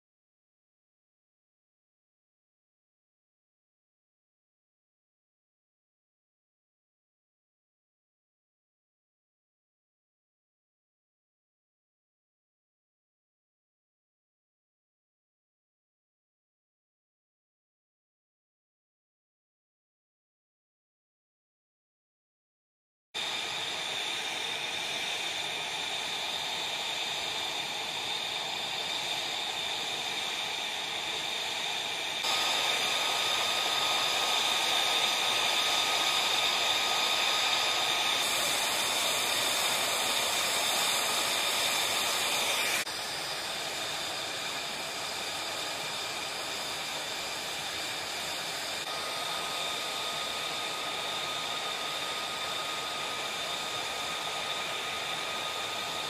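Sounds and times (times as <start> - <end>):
jet engine hiss and whine: 23.2 - 56.0.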